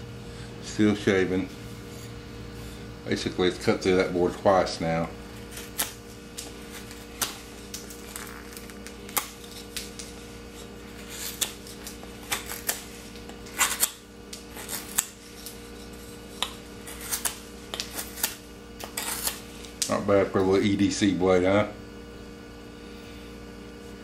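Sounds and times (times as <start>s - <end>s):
knife scraping wood: 5.4s - 19.8s.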